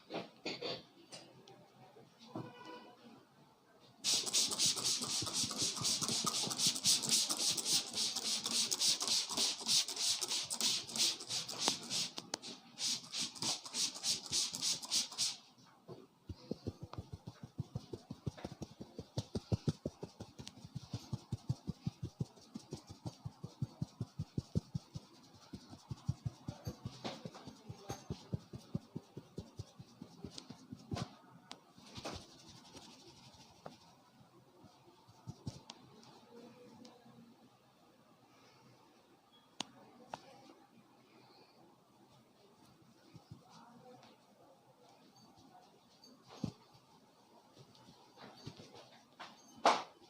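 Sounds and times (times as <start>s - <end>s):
hands rubbing hair and scalp: 4.0s - 15.4s, 16.4s - 31.1s, 31.8s - 34.0s, 35.1s - 35.8s
rhythmic taps on head: 16.3s - 31.0s.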